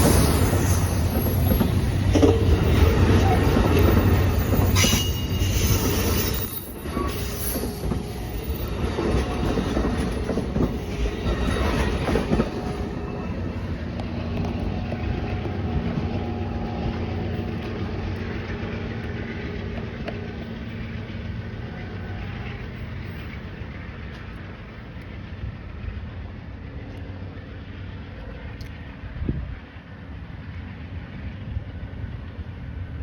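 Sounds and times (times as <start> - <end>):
train rolling past: 0.0 - 33.0
wheels clicking and squealing on rails: 0.0 - 33.0.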